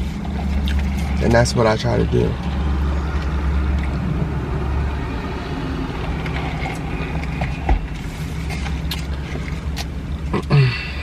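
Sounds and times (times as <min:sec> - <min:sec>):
chewing: 0:00.0 - 0:01.2, 0:06.0 - 0:10.5
steady low rumble: 0:00.0 - 0:11.0.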